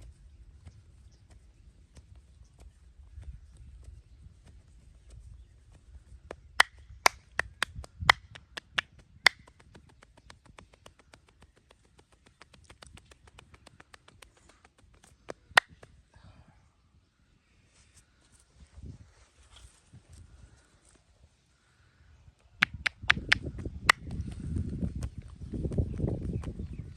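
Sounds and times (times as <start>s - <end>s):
loud cracking snaps: 22.6s - 24.4s.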